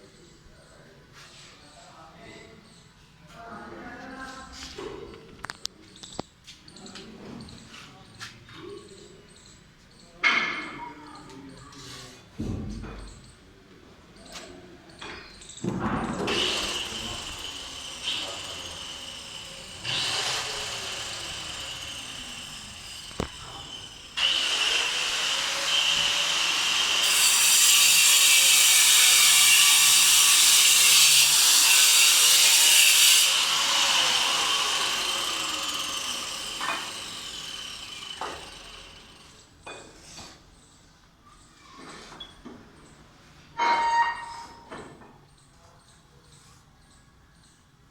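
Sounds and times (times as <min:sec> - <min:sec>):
power tool cutting whine: 0:16.3 - 0:39.4.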